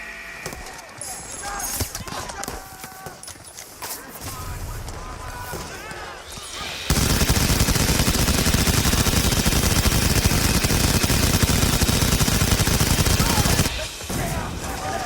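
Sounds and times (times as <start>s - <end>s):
automatic machine-gun fire: 6.9s - 13.8s.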